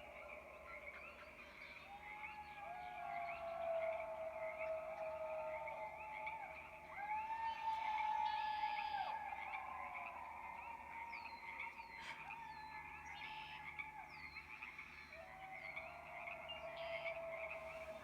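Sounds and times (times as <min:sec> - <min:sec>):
distant people howling: 0:00.0 - 0:13.0.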